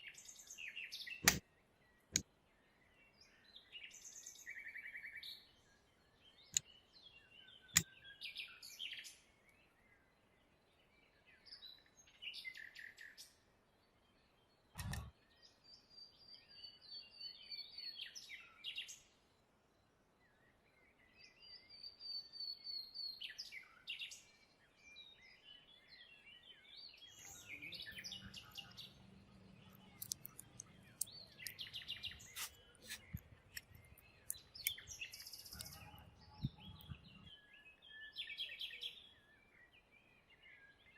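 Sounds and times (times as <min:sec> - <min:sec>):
sharp clicks: 0:14.8 - 0:15.1, 0:27.2 - 0:37.3
birds chirping and singing: 0:21.0 - 0:40.9.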